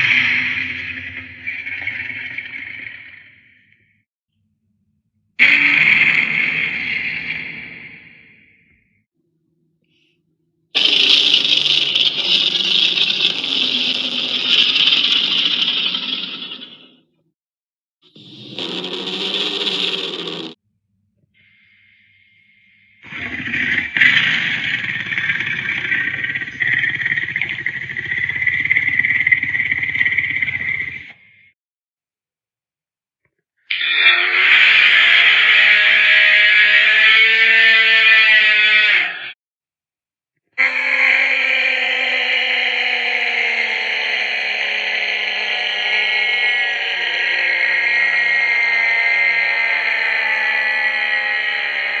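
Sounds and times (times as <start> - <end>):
creature rasping screech: 5.4 - 8.4, 10.8 - 16.9, 18.1 - 20.6, 21.5 - 31.0, 33.7 - 39.4, 40.6 - 52.0.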